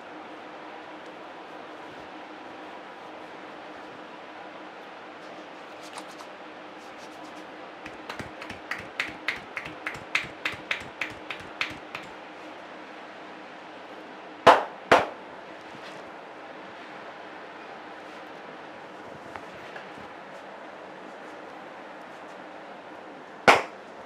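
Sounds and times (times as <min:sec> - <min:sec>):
loud hand hits: 0:07.9 - 0:12.1, 0:23.5 - 0:23.8
hands tapping in head massage: 0:07.9 - 0:12.2.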